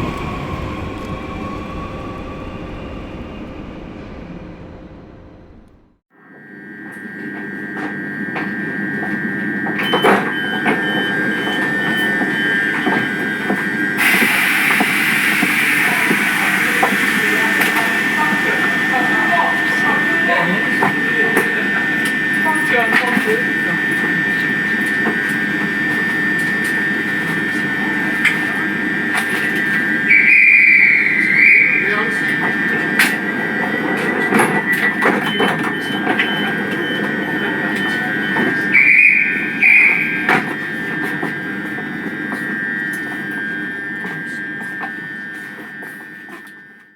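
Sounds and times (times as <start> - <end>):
vehicle interior rumble: 0.0 - 6.0
vehicle whine over rumble: 0.0 - 6.0, 13.5 - 42.6.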